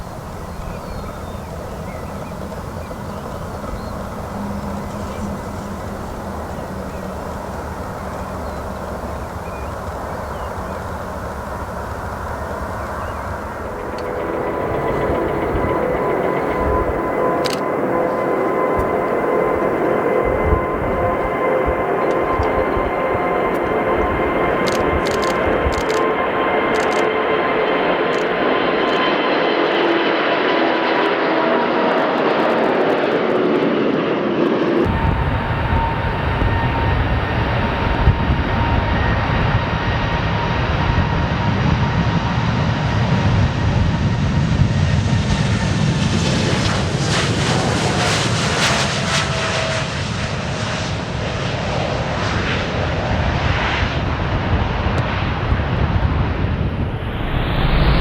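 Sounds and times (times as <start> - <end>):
deep low rumble: 0.0 - 27.9, 55.4 - 58.0
aircraft engine with whine: 0.0 - 58.0.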